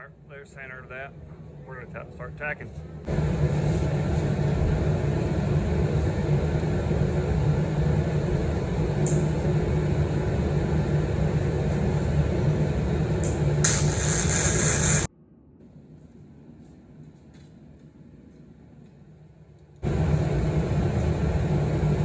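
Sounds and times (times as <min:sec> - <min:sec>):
welding arc crackling and buzzing: 0:12.6 - 0:15.1.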